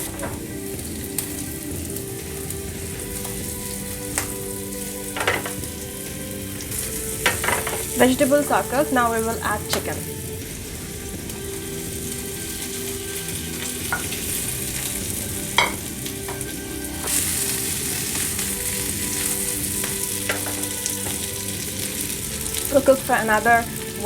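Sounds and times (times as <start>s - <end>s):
chicken sizzling in a pan: 0.0s - 24.0s
knocks against a pan: 5.1s - 5.7s, 7.2s - 7.9s, 15.5s - 16.5s, 20.2s - 21.2s.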